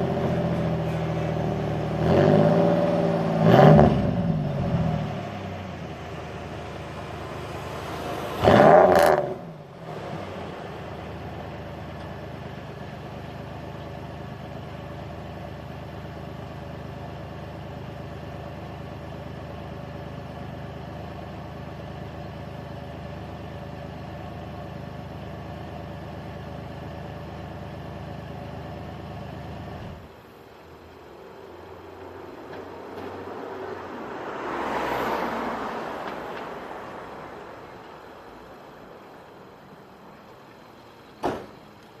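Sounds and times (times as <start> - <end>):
car engine idling: 0.0 - 32.7.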